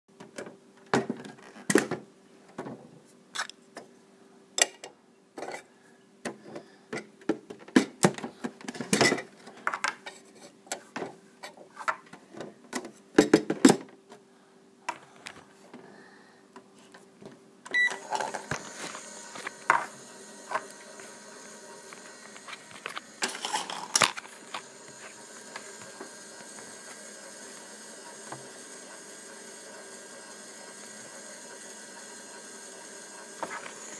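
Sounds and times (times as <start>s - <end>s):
toy microwave humming: 17.7s - 33.9s.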